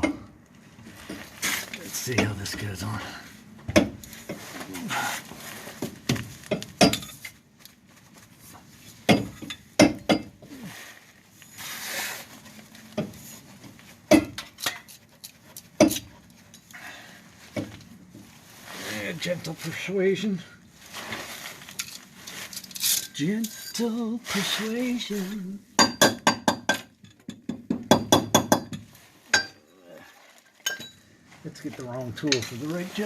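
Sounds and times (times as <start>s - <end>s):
metal parts and tools clinking: 21.7s - 23.8s, 30.6s - 31.0s.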